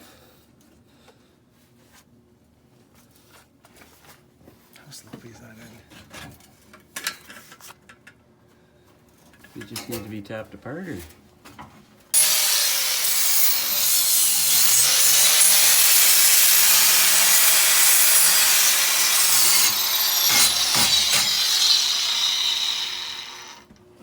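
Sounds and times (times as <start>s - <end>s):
angle grinder grinding metal: 12.2s - 23.6s.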